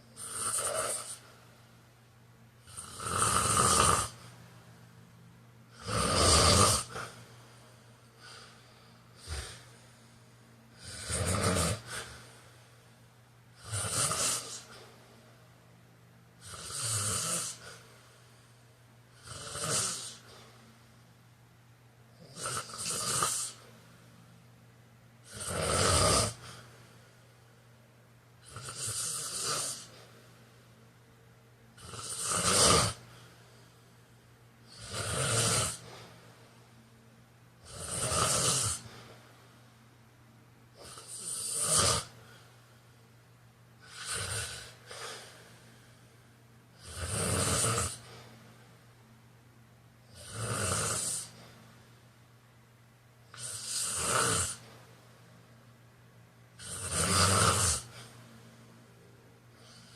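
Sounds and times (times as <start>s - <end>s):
man snoring: 0.2s - 1.3s, 2.6s - 4.4s, 5.7s - 7.3s, 8.2s - 9.7s, 10.7s - 12.4s, 13.6s - 14.9s, 16.4s - 17.8s, 19.1s - 20.4s, 22.2s - 23.7s, 25.2s - 26.7s, 28.4s - 30.1s, 31.7s - 33.3s, 34.7s - 36.1s, 37.6s - 39.1s, 40.8s - 42.4s, 43.8s - 45.4s, 46.8s - 48.2s, 50.1s - 51.4s, 53.3s - 54.7s, 56.6s - 58.1s.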